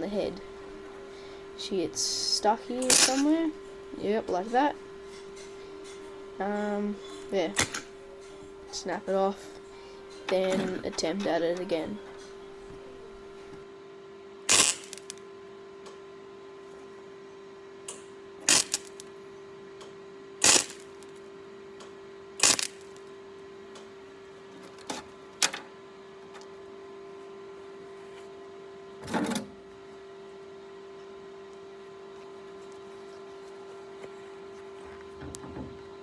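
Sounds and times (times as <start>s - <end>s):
welding bursts: 2.8s - 3.4s, 14.5s - 15.2s, 18.4s - 19.0s, 20.4s - 21.1s, 22.4s - 23.0s
welder hum: 2.8s - 3.7s, 14.5s - 15.2s, 18.4s - 19.1s, 20.4s - 21.2s, 22.4s - 23.1s.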